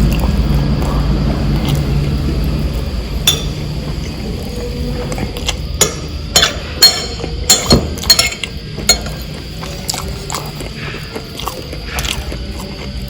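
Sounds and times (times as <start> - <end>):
cutlery clinking on a plate: 5.8 - 9.2.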